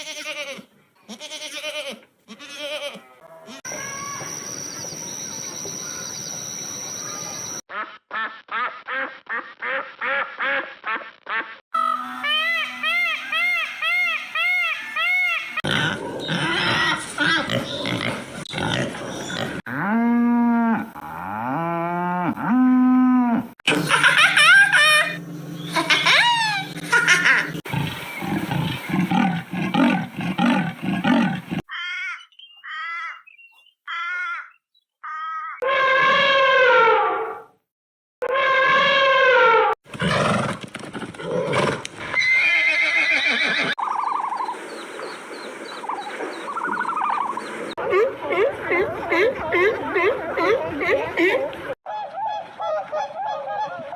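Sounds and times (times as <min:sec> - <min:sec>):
animal calls with falling squeals: 0:03.4 - 0:06.3, 0:11.8 - 0:17.5, 0:33.9 - 0:37.4, 0:42.1 - 0:44.5
horse whinnying: 0:41.2 - 0:43.8.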